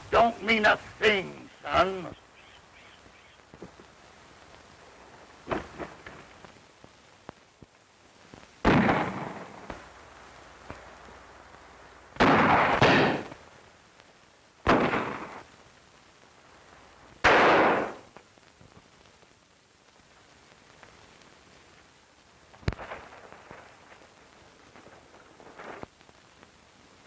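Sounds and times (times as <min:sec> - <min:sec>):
gunshots with echo: 0:08.7 - 0:09.7, 0:12.2 - 0:13.3, 0:14.7 - 0:15.4, 0:17.2 - 0:18.1.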